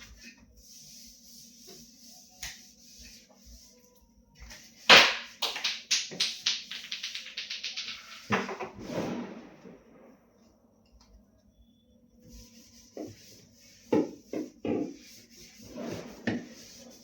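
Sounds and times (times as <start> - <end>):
short rush of noise: 8.6 - 10.4
quick scrubbing by hand: 12.3 - 17.0.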